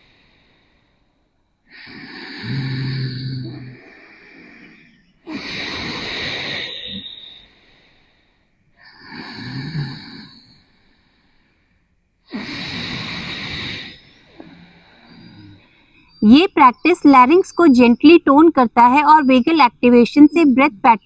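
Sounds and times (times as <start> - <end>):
woman breathing with a hiss: 3.8 - 9.4, 10.1 - 16.2.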